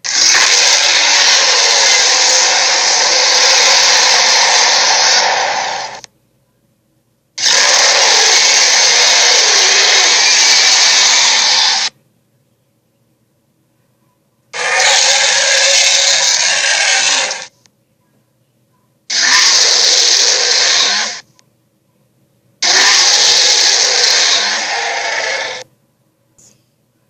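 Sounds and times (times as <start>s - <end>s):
harsh noisy creature blasts: 0.0s - 6.0s, 7.4s - 11.9s, 14.6s - 17.5s, 19.1s - 21.2s, 22.6s - 25.6s.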